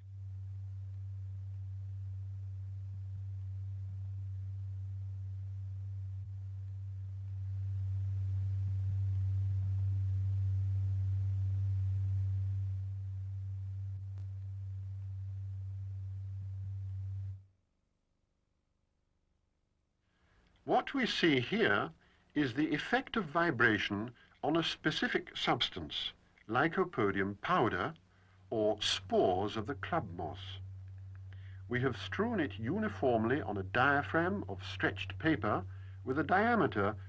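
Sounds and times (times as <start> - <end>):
low sine tone: 0.0 - 17.8, 27.0 - 37.0.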